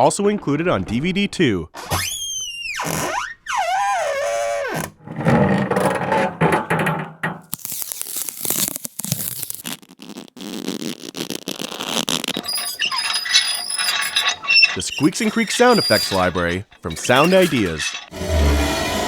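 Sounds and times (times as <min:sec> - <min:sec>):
friction squeaks and creaks: 0:10.4 - 0:19.0
gritty scraping with clicks: 0:12.0 - 0:19.0.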